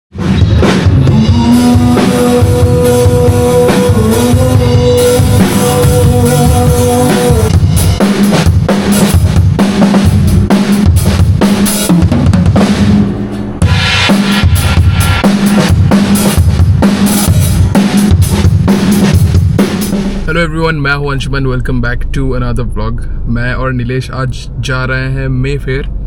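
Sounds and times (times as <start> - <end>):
rock music with drum kit: 0.1 - 20.4.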